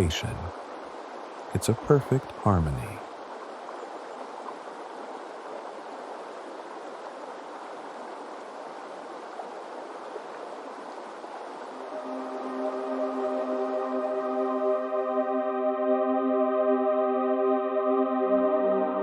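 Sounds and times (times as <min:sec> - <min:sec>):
flowing river water: 0:00.0 - 0:19.0
ambient music tones: 0:11.7 - 0:19.0.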